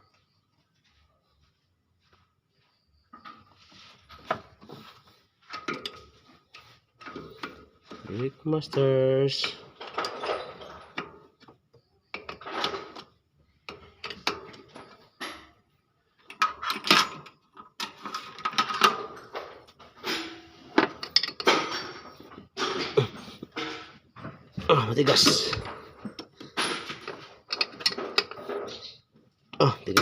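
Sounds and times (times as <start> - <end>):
metal hand tools clinking: 24.7 - 29.0.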